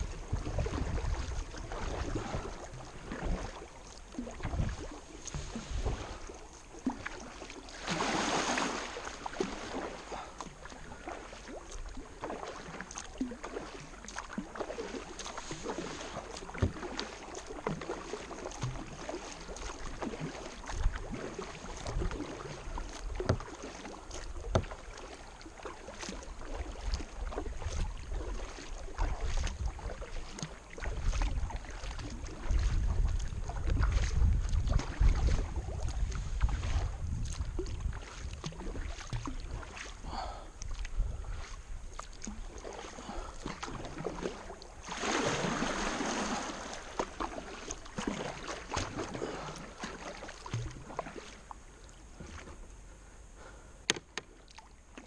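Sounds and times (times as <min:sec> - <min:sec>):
wind rumble on microphone: 0:00.0 - 0:06.3, 0:26.9 - 0:42.4
paddle knocking against hull: 0:00.0 - 0:08.0, 0:12.2 - 0:39.9, 0:53.8 - 0:55.0
rush of water: 0:00.0 - 0:52.7
paddle splashes: 0:00.0 - 0:55.0.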